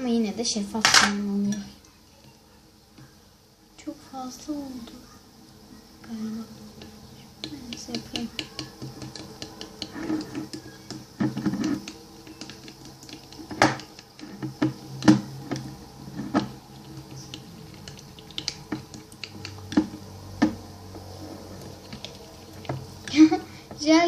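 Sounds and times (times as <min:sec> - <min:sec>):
plastic spoon tapping plastic bowl: 0:06.8 - 0:20.6.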